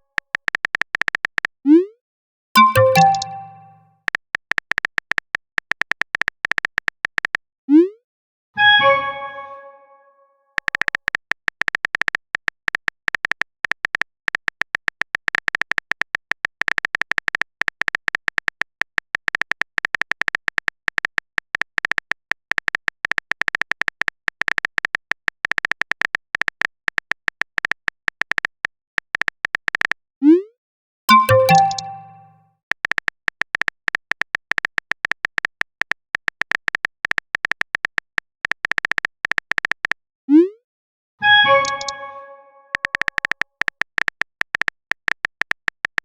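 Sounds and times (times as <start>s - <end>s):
keyboard typing clicks: 0.1s - 1.5s, 2.6s - 7.4s, 31.1s - 40.0s, 41.4s - 46.0s
multi-note message chime: 2.6s - 3.9s, 8.6s - 10.0s, 31.1s - 32.4s, 41.2s - 42.8s.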